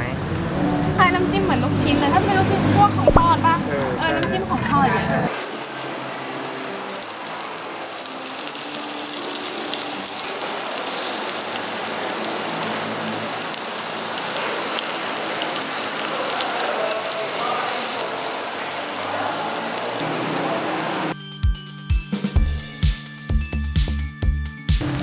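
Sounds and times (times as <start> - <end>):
grills sizzling: 5.3 - 21.2
restaurant hiss: 5.3 - 21.2.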